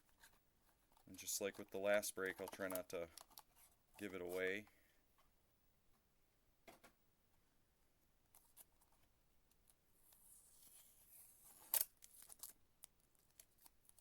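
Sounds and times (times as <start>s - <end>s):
cards rustling: 0.1s - 4.7s, 10.1s - 14.0s.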